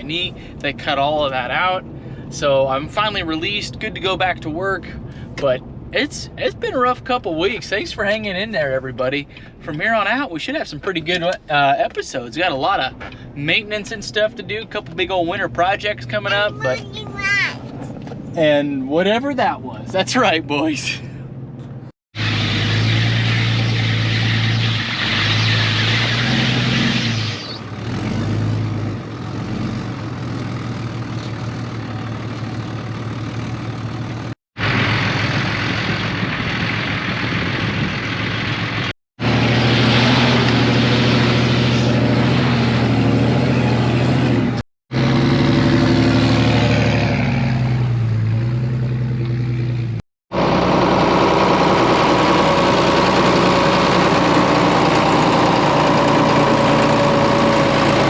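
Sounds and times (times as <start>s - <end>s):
engine running steadily: 0.0s - 0.9s, 1.8s - 6.6s, 9.2s - 9.8s, 49.2s - 58.0s.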